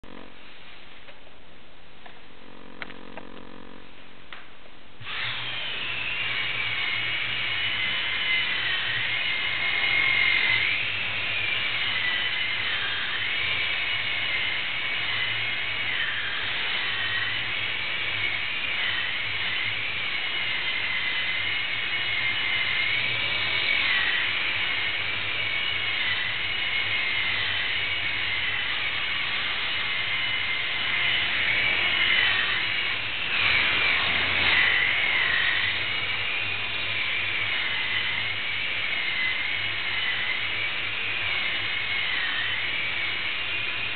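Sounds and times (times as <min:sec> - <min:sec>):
low steady hum: 0:00.0 - 0:05.2
toy helicopter motor whine: 0:02.4 - 0:03.9, 0:05.0 - 0:43.9.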